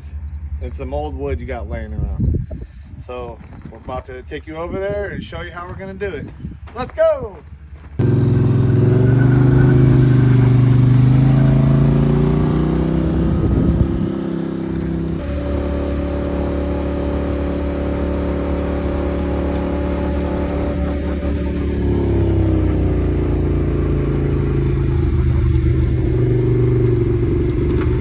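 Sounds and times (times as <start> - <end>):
vehicle engine driving: 7.8 - 28.0.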